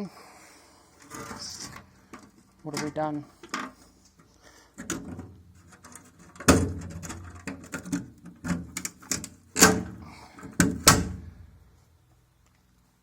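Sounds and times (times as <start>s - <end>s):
sharp knocks and clunks: 4.8s - 11.4s.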